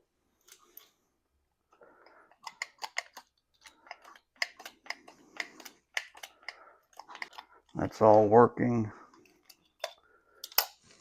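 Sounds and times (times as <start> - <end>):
small metal parts clicking and rattling: 2.3 - 8.3, 9.1 - 11.0.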